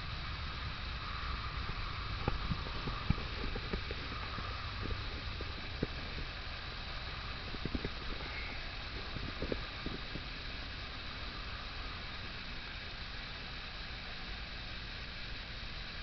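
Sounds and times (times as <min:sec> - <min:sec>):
wood fire crackling: 0:00.0 - 0:14.2
rain hissing: 0:00.0 - 0:16.0.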